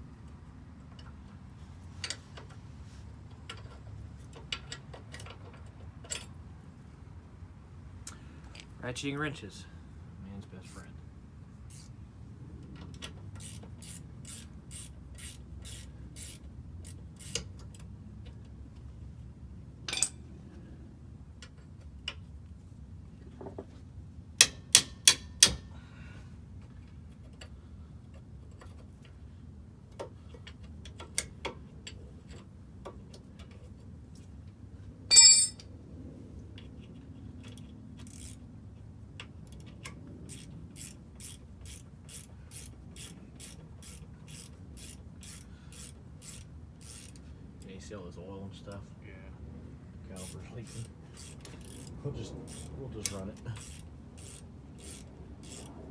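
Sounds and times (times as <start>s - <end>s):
ratcheting wrench clicking: 11.7s - 11.9s, 13.0s - 17.9s, 37.4s - 38.4s, 39.2s - 47.3s, 50.2s - 55.8s
loud metallic clank: 35.1s - 35.6s.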